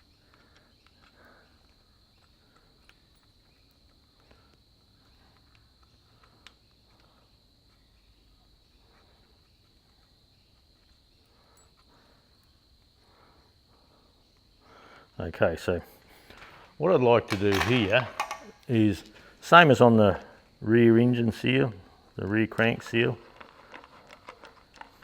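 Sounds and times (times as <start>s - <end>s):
clicks: 17.3s - 18.6s.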